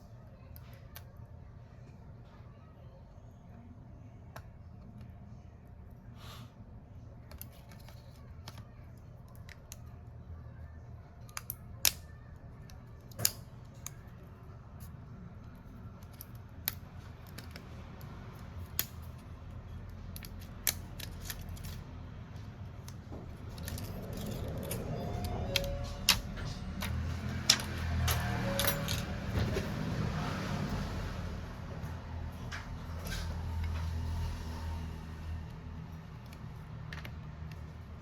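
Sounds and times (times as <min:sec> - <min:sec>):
hand tool clicks and snips: 0:20.1 - 0:21.8.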